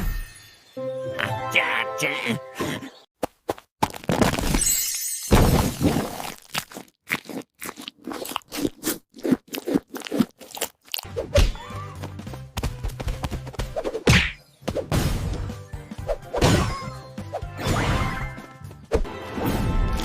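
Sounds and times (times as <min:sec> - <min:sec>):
chewing hard candy: 0:06.1 - 0:11.1.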